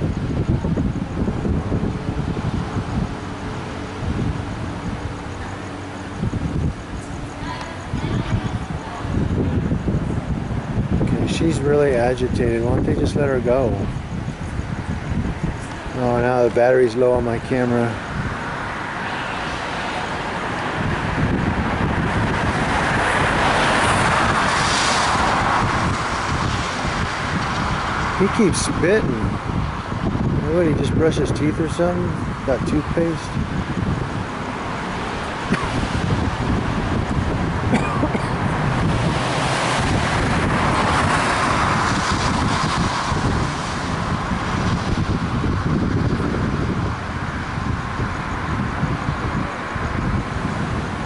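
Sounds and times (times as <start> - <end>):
street noise: 0.0 - 51.0
vehicle passing: 0.0 - 51.0
wind on microphone: 0.0 - 51.0
tyre hiss on wet road: 17.9 - 28.3, 33.2 - 51.0.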